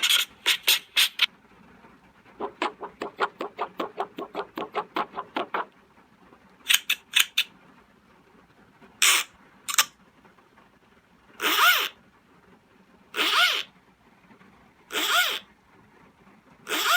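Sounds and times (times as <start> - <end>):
quick clucks: 2.3 - 5.8.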